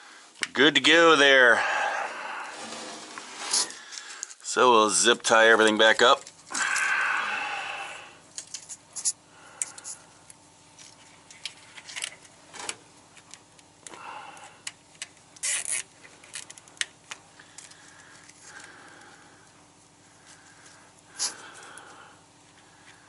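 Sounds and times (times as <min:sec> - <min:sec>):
zip tie clicks and rubbing: 0:15.0 - 0:16.9
zip tie ratcheting rasps: 0:15.4 - 0:16.6.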